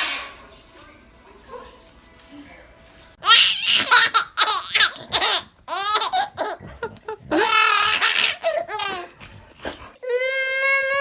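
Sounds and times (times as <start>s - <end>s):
baby squealing: 3.2s - 6.6s, 7.4s - 9.1s
baby laughing: 3.2s - 9.2s.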